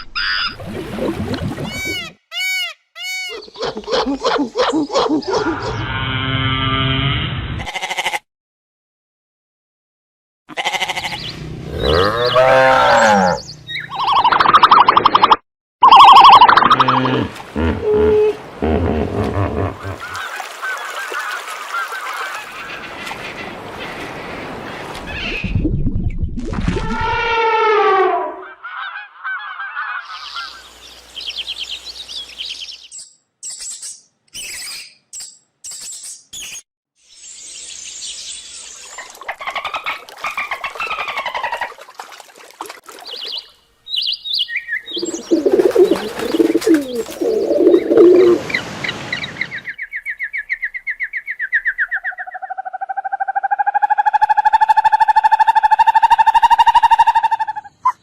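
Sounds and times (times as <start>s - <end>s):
falling pitched animal call: 15.8s - 20.2s, 26.9s - 29.0s
harsh animal calling: 15.8s - 20.2s
long steady animal call: 15.8s - 20.2s.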